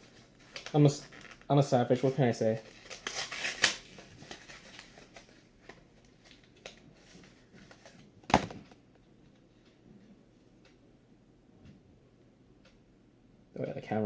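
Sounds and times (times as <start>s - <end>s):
plastic packaging crackling: 0.0s - 8.4s.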